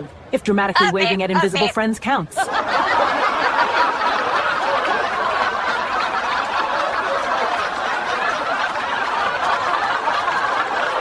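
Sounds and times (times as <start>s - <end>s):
people laughing: 0.8s - 11.0s.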